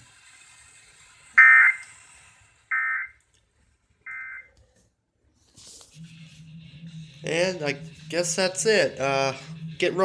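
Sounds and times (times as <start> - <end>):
buzzing digital data bursts: 6.0 - 10.0.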